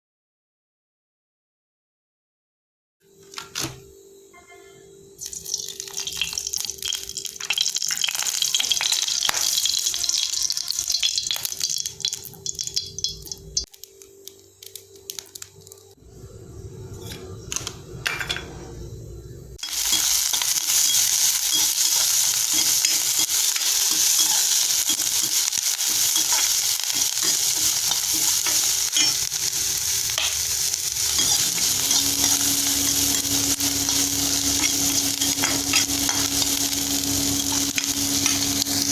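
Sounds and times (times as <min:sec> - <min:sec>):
food sizzling in hot oil: 0:05.2 - 0:15.7, 0:19.6 - 0:38.9.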